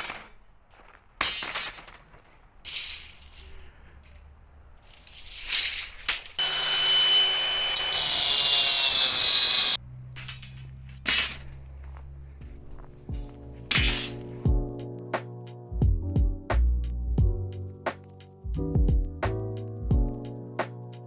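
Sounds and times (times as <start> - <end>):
angle grinder cutting: 6.4 - 9.8.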